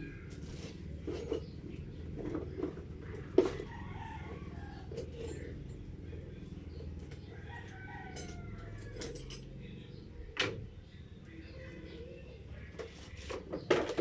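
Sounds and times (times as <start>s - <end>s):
rooster crowing: 3.6s - 5.0s, 7.3s - 9.2s.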